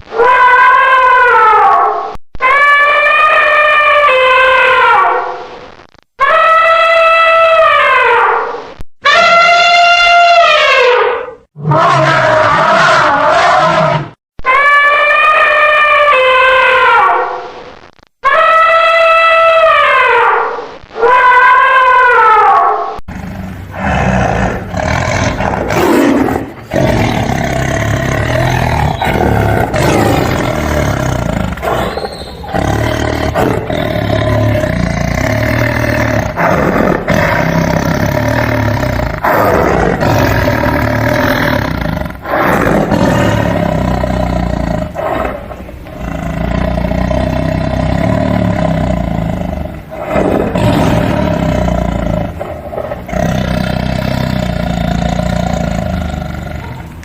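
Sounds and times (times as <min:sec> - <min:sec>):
tiger roaring and growling: 0:11.6 - 0:16.9, 0:23.1 - 0:57.0.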